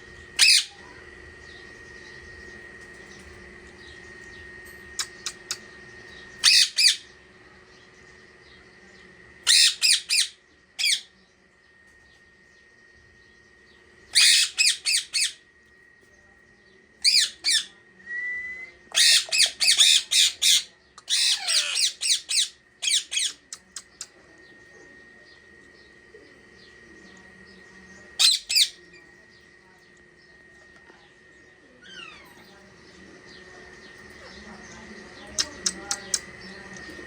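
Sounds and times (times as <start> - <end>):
parrot squawking: 0.4 - 0.7, 6.4 - 7.0, 9.5 - 11.1, 14.2 - 15.4, 19.0 - 23.4, 28.2 - 28.8.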